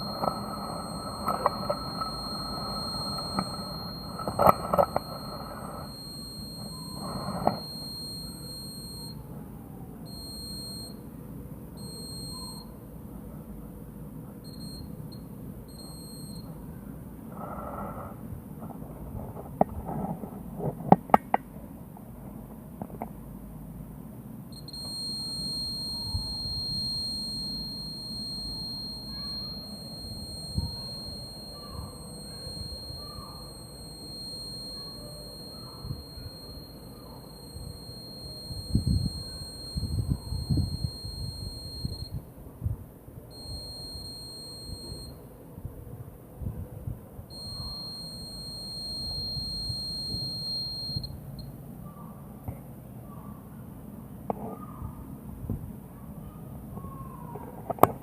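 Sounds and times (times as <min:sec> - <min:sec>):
piezo buzzer high-pitched tone: 0:00.0 - 0:11.1, 0:11.8 - 0:12.8, 0:24.5 - 0:42.3, 0:43.3 - 0:45.3, 0:47.3 - 0:51.6.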